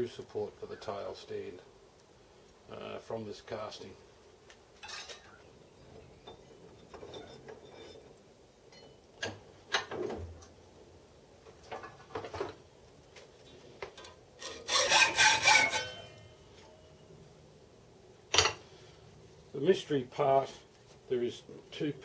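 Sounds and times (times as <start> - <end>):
hacksaw cutting metal: 14.4 - 16.2.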